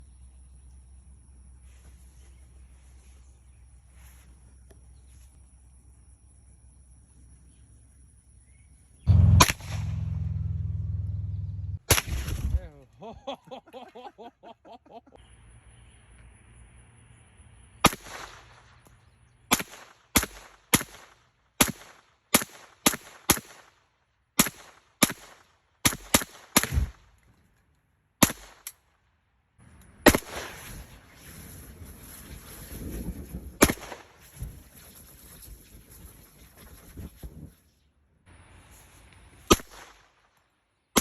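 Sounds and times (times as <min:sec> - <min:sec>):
single gunshots: 0:09.1 - 0:12.7, 0:17.8 - 0:18.7, 0:24.4 - 0:27.0, 0:28.2 - 0:28.7, 0:30.0 - 0:30.7, 0:33.6 - 0:34.2, 0:39.5 - 0:40.1.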